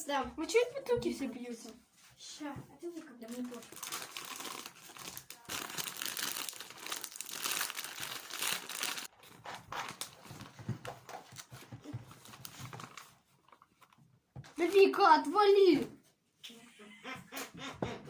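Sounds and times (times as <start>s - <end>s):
packaging crinkling: 3.2s - 14.0s.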